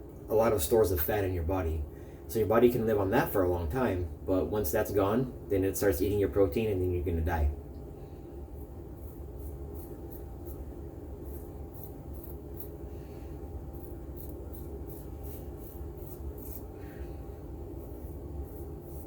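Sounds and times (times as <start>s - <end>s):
razor scraping stubble: 8.5s - 19.0s.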